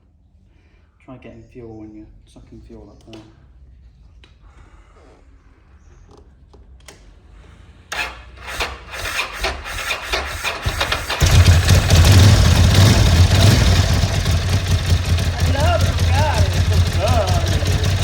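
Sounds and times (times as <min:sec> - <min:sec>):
electric starter cranking: 0:07.9 - 0:18.0
motorcycle engine running: 0:09.0 - 0:18.0.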